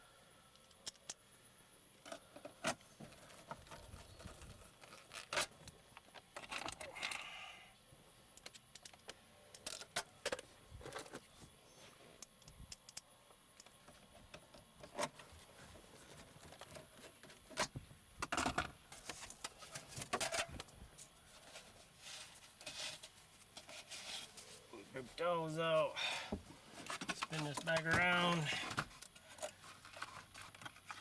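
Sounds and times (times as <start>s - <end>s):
small metal parts clicking and scraping: 8.4s - 11.2s.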